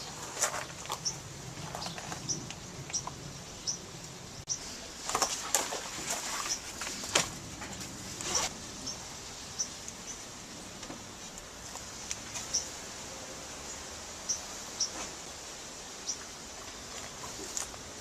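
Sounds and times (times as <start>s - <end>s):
birds chirping: 0.0s - 10.8s, 11.8s - 12.8s, 13.6s - 18.0s
steady background hiss: 0.0s - 18.0s.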